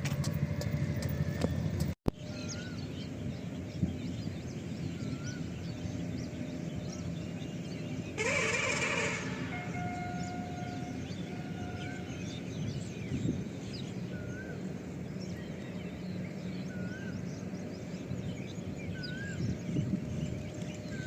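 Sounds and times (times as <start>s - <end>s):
birds chirping: 0.0s - 21.0s
bird warbling short note: 8.2s - 12.3s.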